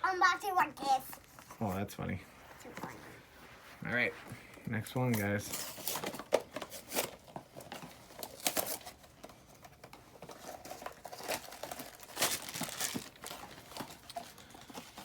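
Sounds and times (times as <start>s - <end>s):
packaging crinkling and tearing: 5.5s - 15.0s.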